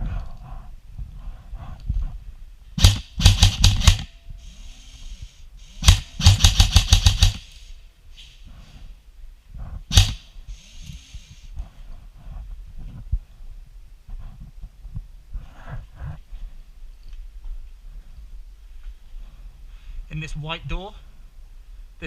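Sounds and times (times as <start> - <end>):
airsoft rifle shots: 2.8 - 4.2, 5.8 - 7.6, 9.9 - 10.4.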